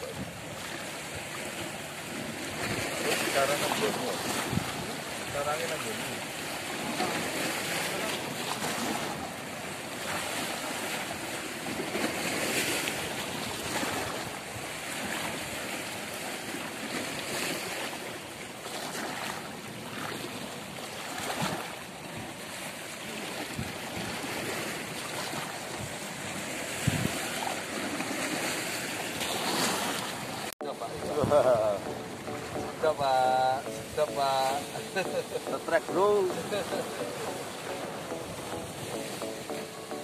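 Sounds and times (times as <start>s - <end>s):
wind on microphone: 0.0s - 0.6s, 4.2s - 5.3s, 23.5s - 24.4s, 25.3s - 27.4s
sea waves washing: 0.0s - 40.0s.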